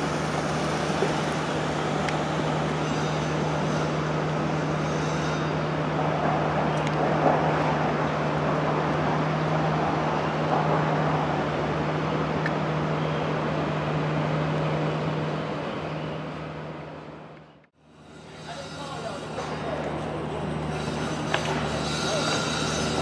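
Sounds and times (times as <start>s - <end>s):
traffic noise: 0.0s - 23.0s.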